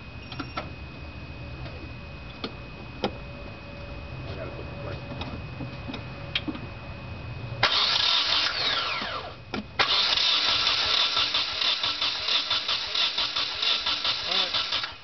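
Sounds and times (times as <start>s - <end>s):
low hum: 0.0s - 12.3s
engine cranking without starting: 7.6s - 15.0s.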